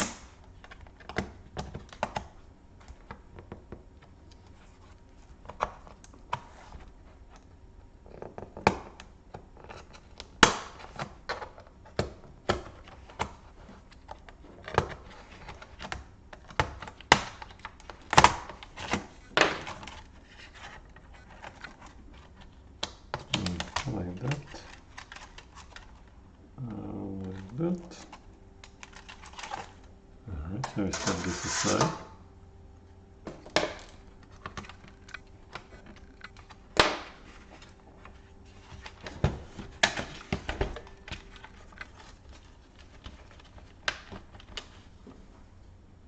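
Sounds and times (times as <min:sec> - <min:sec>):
plastic laptop parts clicking: 0:08.1 - 0:26.1, 0:27.4 - 0:29.8, 0:33.5 - 0:36.9, 0:39.8 - 0:44.7.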